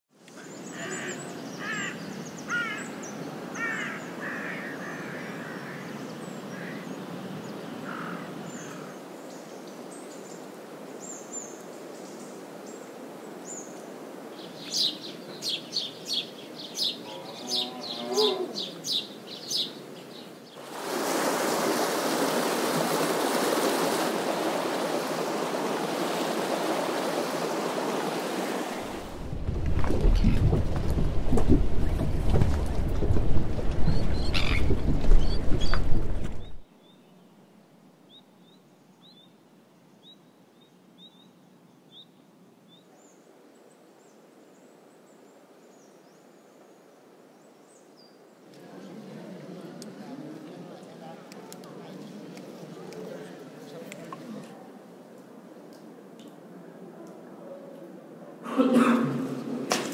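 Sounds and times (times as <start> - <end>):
background hiss: 0.2 - 34.3
birds chirping: 0.3 - 20.7, 28.7 - 37.4.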